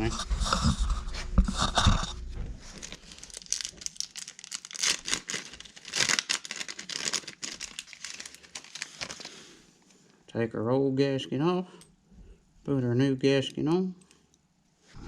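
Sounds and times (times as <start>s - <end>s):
plastic ripping: 2.6s - 9.5s
plastic packaging crinkling: 2.6s - 9.6s.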